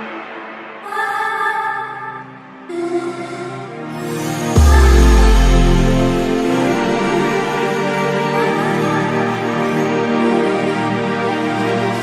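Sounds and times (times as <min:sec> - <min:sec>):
electronic music: 0:03.9 - 0:09.3
deep bass note: 0:04.6 - 0:07.9.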